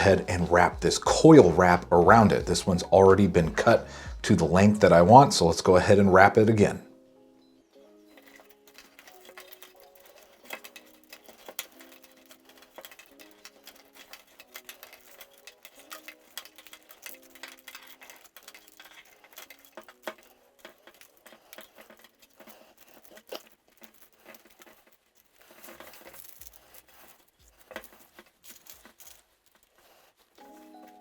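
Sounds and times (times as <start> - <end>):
plastic coil wrap clicking: 8.1 - 31.0.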